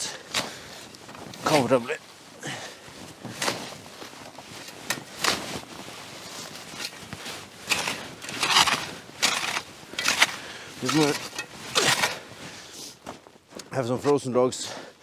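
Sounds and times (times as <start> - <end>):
shovel scraping snow: 0.4 - 2.0, 2.8 - 13.0.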